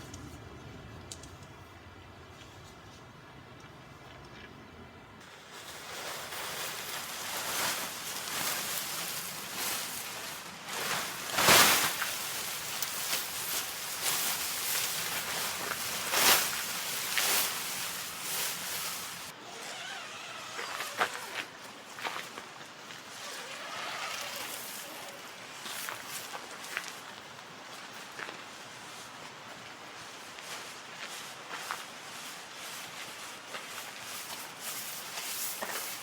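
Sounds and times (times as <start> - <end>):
steady rustling: 5.2 - 19.3.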